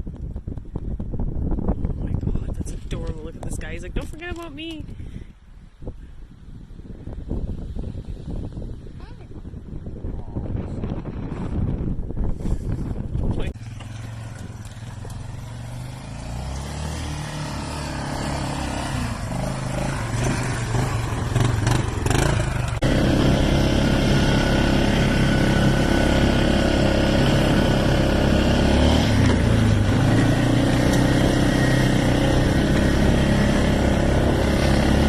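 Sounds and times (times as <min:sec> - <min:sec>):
atv engine running: 0:12.4 - 0:35.0.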